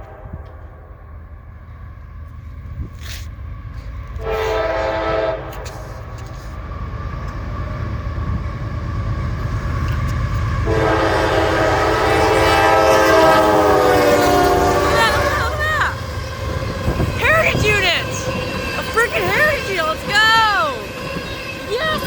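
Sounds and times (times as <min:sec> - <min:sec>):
train air horn: 0:00.0 - 0:01.0, 0:04.2 - 0:06.1, 0:10.6 - 0:15.8, 0:16.9 - 0:20.8
train engine and rail rumble: 0:00.0 - 0:22.0.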